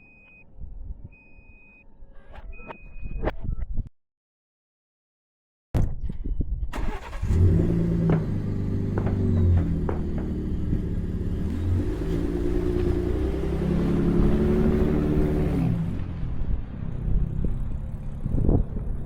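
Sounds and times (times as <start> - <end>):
vehicle engine running: 7.2 - 19.0.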